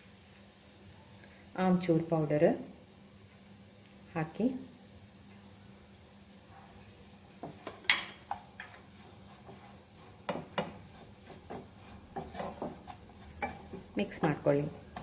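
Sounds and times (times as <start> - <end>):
spoon scraping a pan: 7.4 - 15.0.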